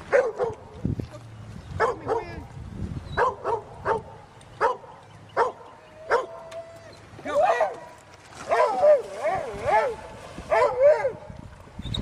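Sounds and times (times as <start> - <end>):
dog barking: 0.1 - 0.6, 1.8 - 2.3, 3.2 - 6.4, 8.5 - 11.2.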